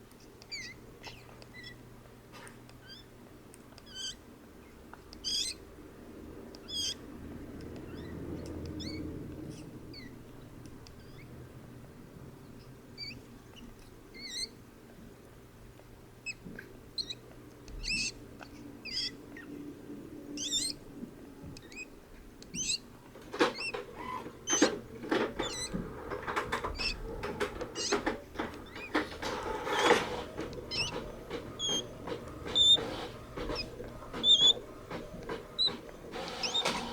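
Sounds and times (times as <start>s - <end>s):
rustling and clicking: 22.4s - 36.9s
hamster squeaky breathing and snoring: 23.6s - 34.6s, 35.5s - 36.9s.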